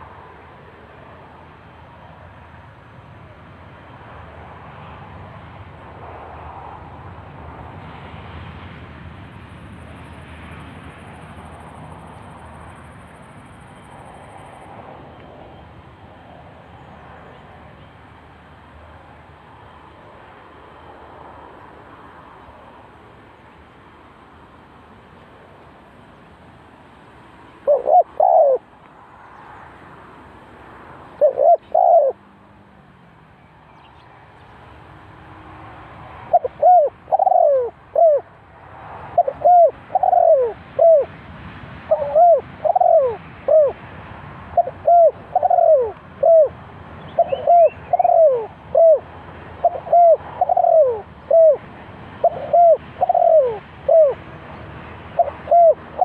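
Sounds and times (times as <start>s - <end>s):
dove cooing: 27.6s - 28.7s, 31.2s - 32.2s, 36.3s - 38.3s, 39.1s - 41.2s, 41.9s - 43.8s, 44.5s - 51.6s, 52.2s - 54.2s, 55.1s - 56.0s.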